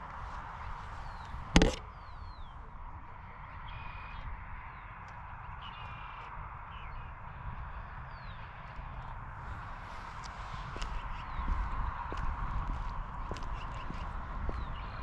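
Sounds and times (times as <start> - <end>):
outdoor background noise: 0.0 - 15.0.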